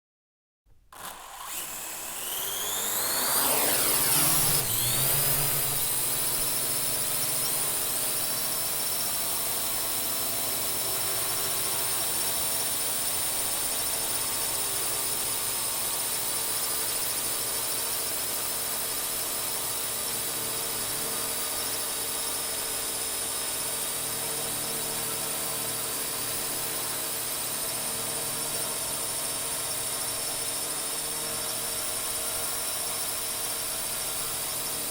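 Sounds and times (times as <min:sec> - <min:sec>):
drone propellers whining: 0:01.0 - 0:08.2.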